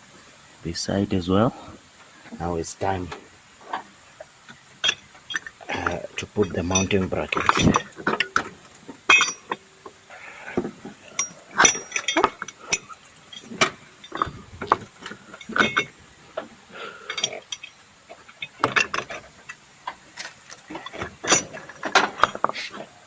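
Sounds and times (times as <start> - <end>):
metallic clinks of hand tools: 4.8 - 8.5, 9.1 - 9.6, 11.1 - 16.0, 17.0 - 19.6, 20.7 - 22.8.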